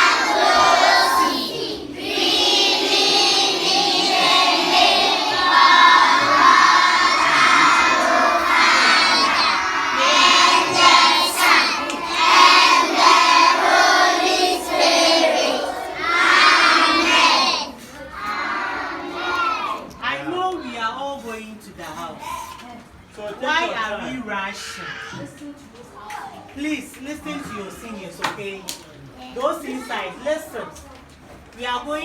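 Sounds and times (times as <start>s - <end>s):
children singing in unison: 0.0s - 19.8s.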